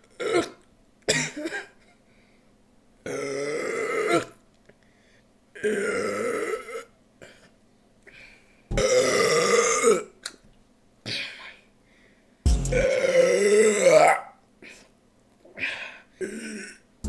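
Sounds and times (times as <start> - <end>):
person burping: 8.7 - 10.0.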